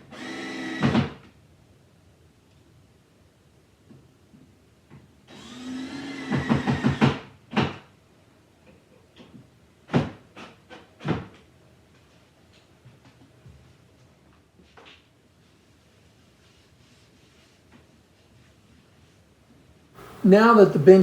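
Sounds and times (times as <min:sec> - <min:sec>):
power drill driving a screw: 0:00.1 - 0:01.1, 0:05.3 - 0:07.2.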